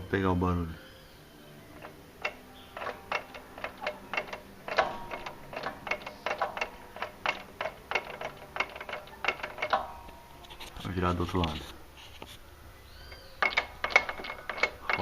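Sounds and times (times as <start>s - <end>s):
metallic clicks from car driveline: 1.8s - 10.2s, 13.1s - 15.0s.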